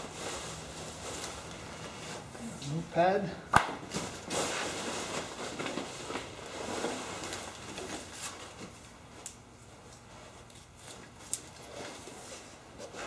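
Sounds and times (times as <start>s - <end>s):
items rustling in packing peanuts: 0.0s - 2.0s, 3.9s - 8.7s.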